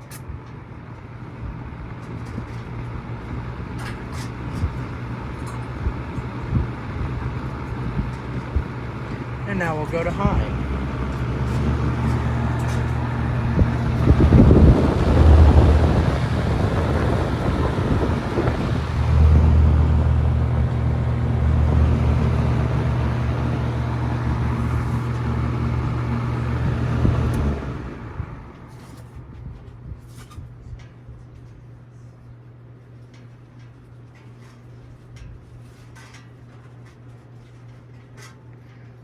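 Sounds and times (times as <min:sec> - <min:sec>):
box fan running: 0:00.0 - 0:39.0
low rumbles: 0:01.4 - 0:30.7.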